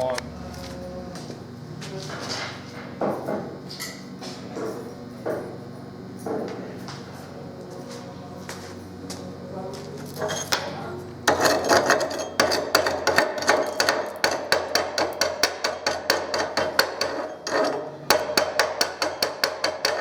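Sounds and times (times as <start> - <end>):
chipping hammer striking metal: 11.3 - 17.2, 18.1 - 20.0.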